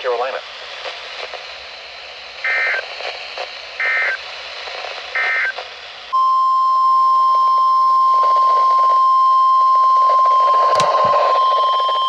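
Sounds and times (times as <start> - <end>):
faint radio static: 0.0 - 6.1
loud steady alarm tone: 2.4 - 2.8, 3.8 - 4.2, 5.2 - 5.6.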